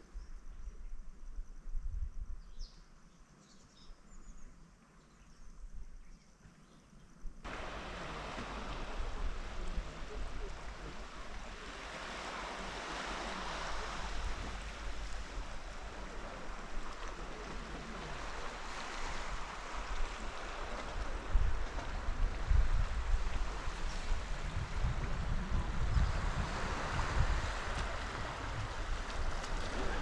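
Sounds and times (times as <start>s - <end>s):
wind rumbling on microphone: 0.0s - 2.9s, 7.2s - 30.0s
sea waves on shore: 7.5s - 30.0s.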